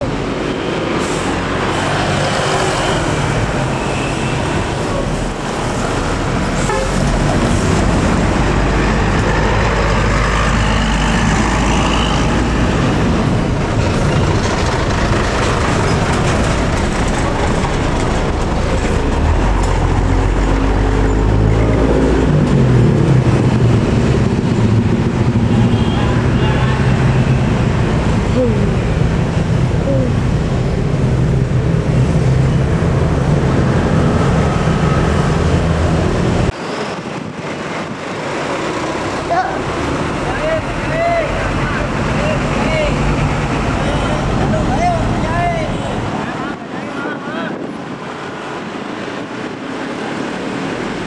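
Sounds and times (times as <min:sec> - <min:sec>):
bus diesel engines running: 0:00.0 - 0:51.0
bus horn toots: 0:06.6 - 0:07.1, 0:25.5 - 0:27.5.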